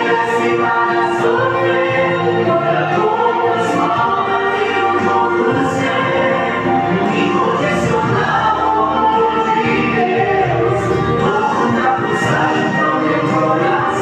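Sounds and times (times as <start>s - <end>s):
choir singing in harmony: 0.0s - 14.0s.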